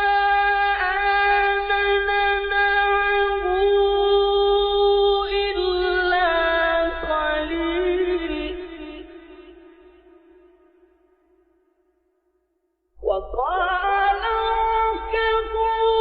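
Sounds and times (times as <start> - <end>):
man reciting melodically: 5.0 - 9.1, 13.0 - 16.0.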